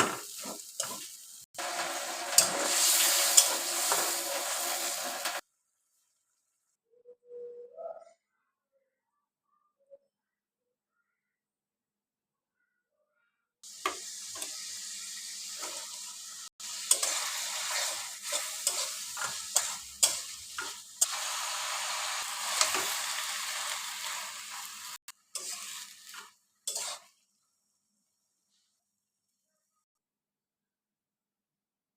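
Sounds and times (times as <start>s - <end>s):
food sizzling in a pan: 0.0s - 5.4s, 13.6s - 29.0s
spatula scraping a pan: 16.8s - 21.2s, 22.0s - 27.2s.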